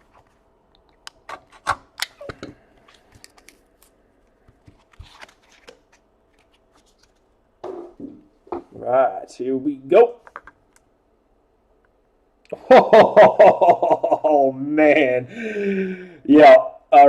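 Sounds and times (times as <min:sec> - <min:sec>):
hands handling trading cards: 0:00.0 - 0:07.3.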